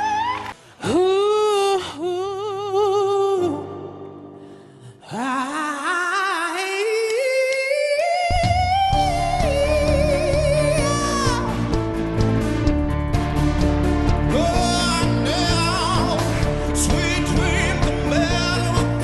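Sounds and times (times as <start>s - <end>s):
man singing with vibrato: 0.8s - 11.6s, 14.2s - 19.0s
band with bass and drums: 8.3s - 19.0s.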